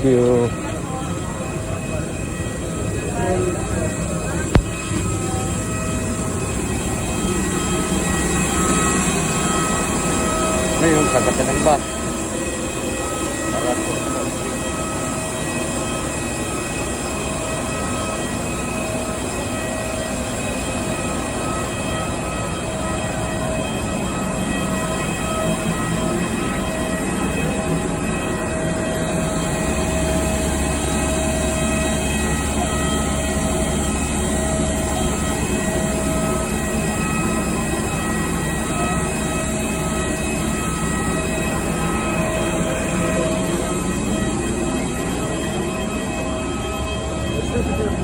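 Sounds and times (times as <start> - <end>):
faint whine: 2.0 - 5.8.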